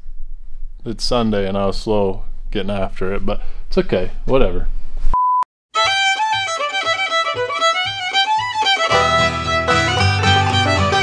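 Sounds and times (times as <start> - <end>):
fiddle music: 5.7 - 11.0.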